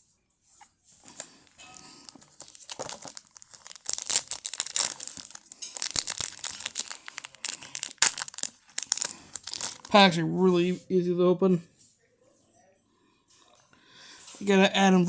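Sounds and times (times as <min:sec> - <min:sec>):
plastic wrapper tearing and crinkling: 0:01.0 - 0:10.1.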